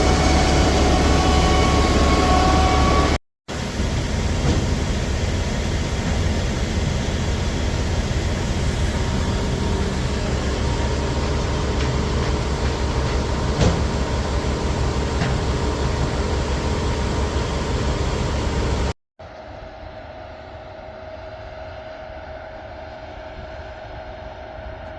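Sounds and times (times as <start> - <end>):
harvest machinery drone: 0.0 - 18.9.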